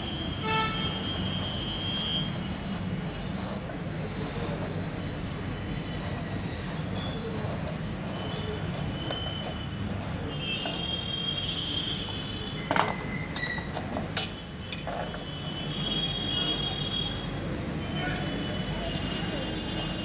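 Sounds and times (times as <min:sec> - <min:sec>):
street traffic rumble: 0:00.0 - 0:20.0
metal tools clinking on bolts: 0:14.1 - 0:14.9.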